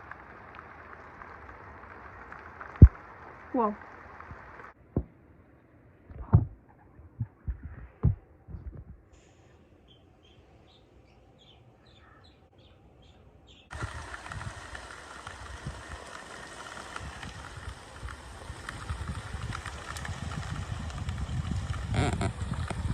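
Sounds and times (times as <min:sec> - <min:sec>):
low thumps: 0:06.1 - 0:09.1
steady hiss: 0:09.1 - 0:11.8, 0:13.7 - 0:22.9.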